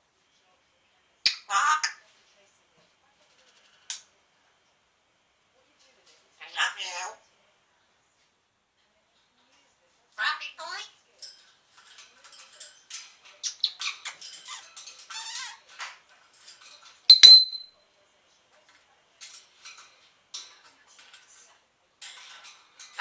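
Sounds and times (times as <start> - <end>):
parrot chattering: 17.1 - 17.7
parrot sharp click call: 17.1 - 17.7.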